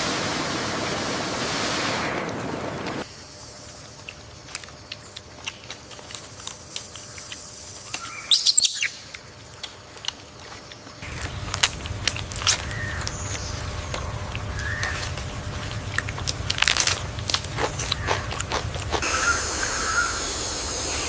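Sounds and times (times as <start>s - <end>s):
short high chirping calls: 8.0s - 9.1s.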